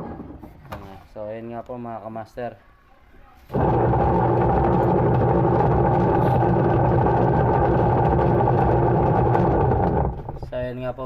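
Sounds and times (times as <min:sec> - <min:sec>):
washing machine grinding hum: 0:03.5 - 0:10.7.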